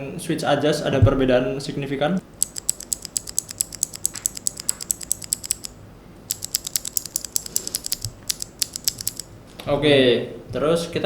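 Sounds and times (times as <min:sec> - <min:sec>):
keyboard switch clicking: 0:02.4 - 0:05.7, 0:06.3 - 0:09.3.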